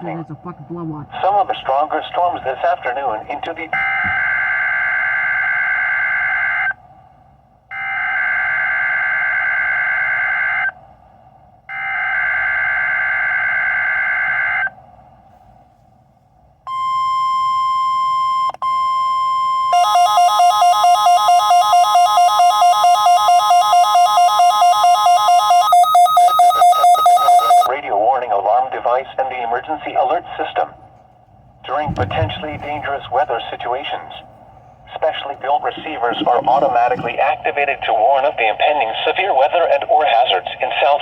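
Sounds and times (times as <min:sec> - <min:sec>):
steady warning alarm tone: 0:03.6 - 0:06.8, 0:16.7 - 0:27.7
pulsing wavering alarm: 0:16.7 - 0:27.7.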